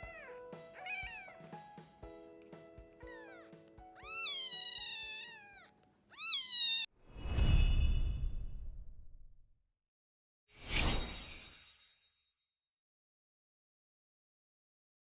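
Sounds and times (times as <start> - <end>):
kitten mewing: 0.0 - 1.4, 3.0 - 6.9
soft background music: 0.0 - 6.1
whoosh sound effect: 7.1 - 9.3.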